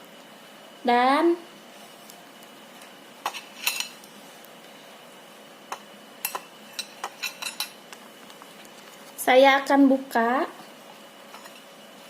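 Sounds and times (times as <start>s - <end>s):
kitchen utensils and dishes clinking: 3.3s - 4.0s, 6.2s - 7.8s.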